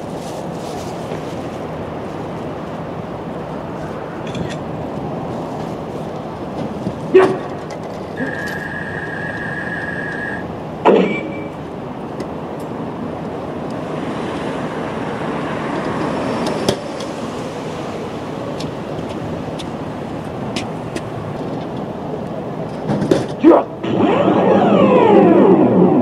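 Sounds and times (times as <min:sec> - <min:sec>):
traffic hum: 0:00.0 - 0:26.0
electronic beep: 0:08.2 - 0:11.6
vehicle passing: 0:13.5 - 0:21.3.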